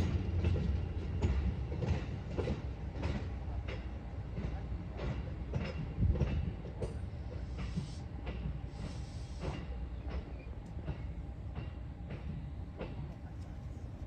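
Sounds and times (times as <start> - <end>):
wheels clacking over rail joints: 0.0 - 7.0
train rumbling on rails: 0.0 - 14.0.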